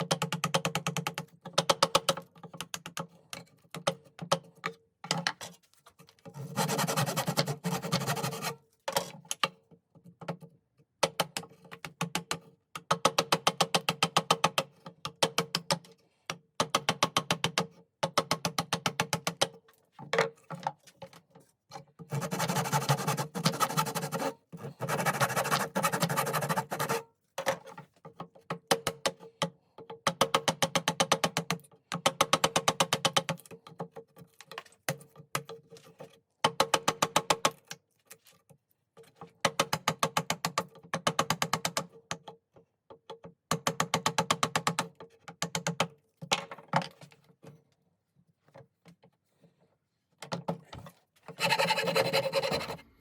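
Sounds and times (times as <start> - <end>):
hand tool scraping wooden handle: 6.2 - 9.1, 22.0 - 27.6, 50.6 - 53.0.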